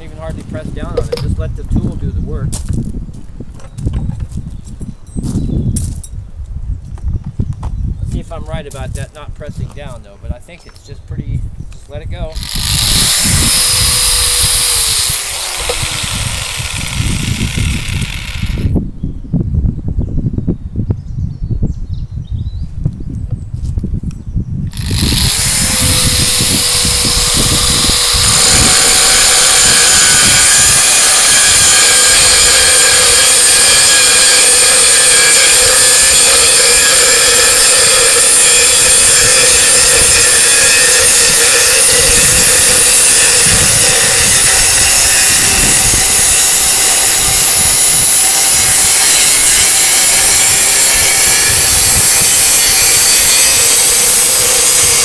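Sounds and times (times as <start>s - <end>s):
angle grinder cutting stone: 12.2s - 18.8s, 24.7s - 55.0s.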